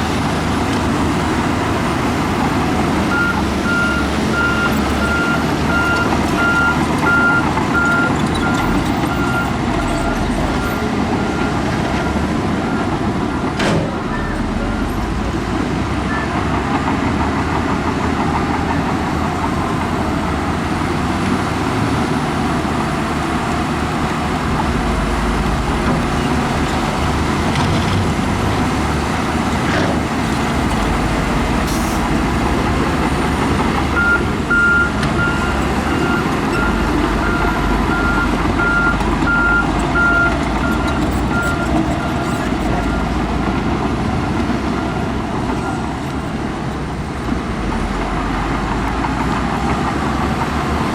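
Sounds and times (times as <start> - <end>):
heavy machine diesel engines: 0.0 - 50.9
reversing alarm beeps: 3.1 - 12.9, 34.0 - 43.1.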